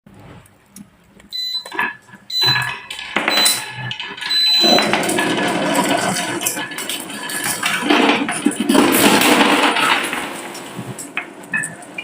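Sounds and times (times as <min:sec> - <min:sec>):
high ringing tones: 0:01.4 - 0:06.4.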